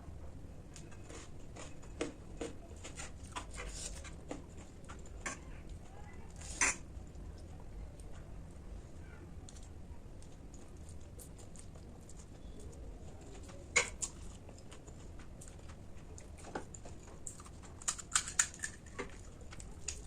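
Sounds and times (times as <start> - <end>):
eating crunches and clicks: 9.4 - 20.0.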